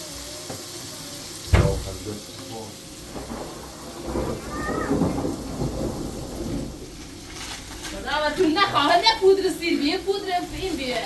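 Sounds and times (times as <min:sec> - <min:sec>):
watery hiss: 0:00.0 - 0:07.4
deep loud thump: 0:01.5 - 0:02.2.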